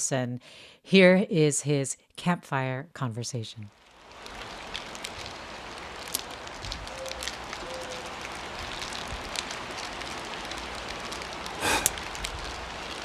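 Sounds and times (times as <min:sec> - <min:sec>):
campfire crackling: 0:03.7 - 0:13.0.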